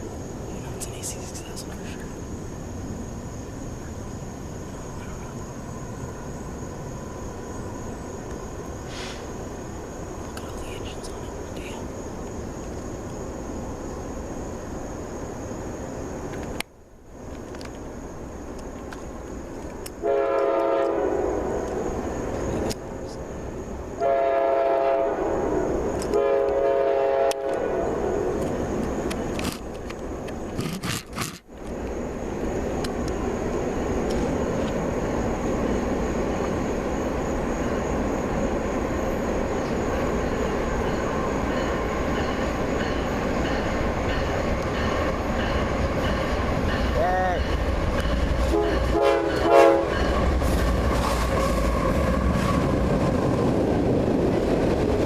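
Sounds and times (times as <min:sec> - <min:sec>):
train rumbling and rattling past: 0:00.0 - 0:55.0
locomotive horn blasts: 0:20.0 - 0:21.5, 0:24.0 - 0:25.3, 0:26.1 - 0:28.2, 0:48.5 - 0:50.0.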